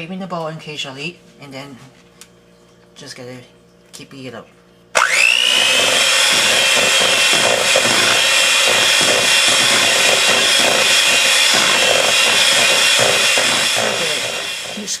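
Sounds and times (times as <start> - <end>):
electric mixer whining: 5.0 - 15.0.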